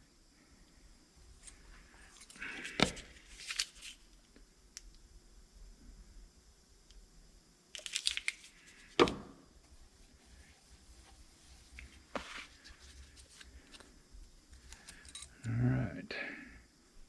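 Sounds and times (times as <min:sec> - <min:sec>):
metal parts clicking and rattling: 0:14.7 - 0:15.4.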